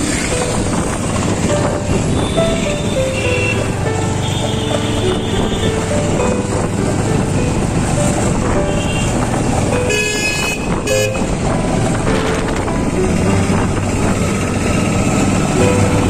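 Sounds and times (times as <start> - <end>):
motorcycle engine: 0.0 - 16.0
wind noise: 0.0 - 16.0
vehicle horn honking: 1.9 - 5.8, 8.7 - 9.2, 9.8 - 11.4.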